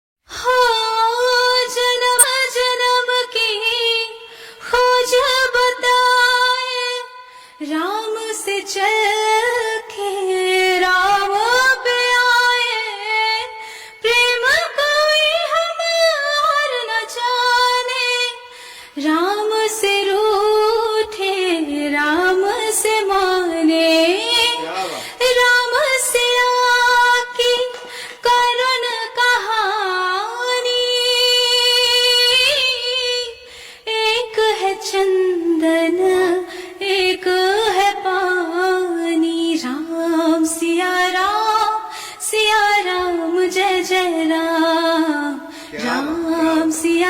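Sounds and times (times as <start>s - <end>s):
woman singing: 0.3s - 47.0s
singer breathing: 4.2s - 4.6s, 7.2s - 7.6s, 13.6s - 14.0s, 18.4s - 19.0s, 24.7s - 25.2s, 27.8s - 28.2s, 33.4s - 33.9s, 36.5s - 36.8s, 41.9s - 42.3s, 45.4s - 46.3s.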